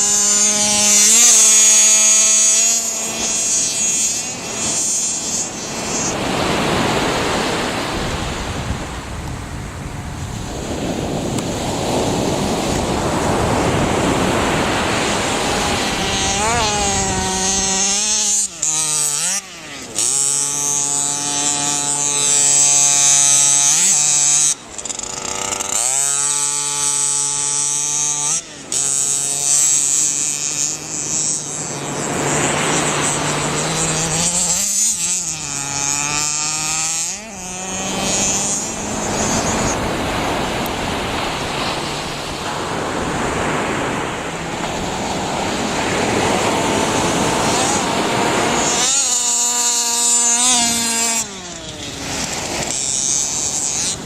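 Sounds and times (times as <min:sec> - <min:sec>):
surf: 0:00.0 - 0:24.8, 0:27.2 - 0:54.0
small toy car motor buzzing: 0:00.0 - 0:54.0
wind noise: 0:06.1 - 0:18.0, 0:37.6 - 0:49.0.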